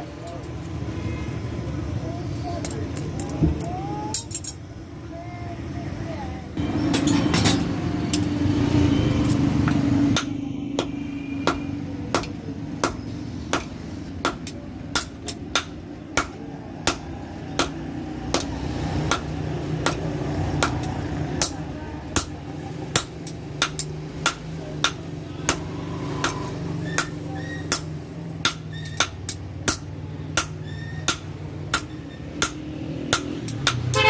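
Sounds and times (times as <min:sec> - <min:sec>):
hammer striking steel on anvil: 0:10.1 - 0:18.5, 0:19.1 - 0:21.6, 0:22.2 - 0:34.0.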